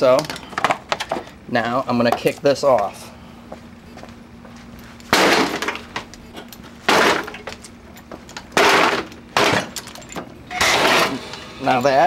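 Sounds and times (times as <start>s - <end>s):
kicks against air conditioner: 5.1s - 6.1s.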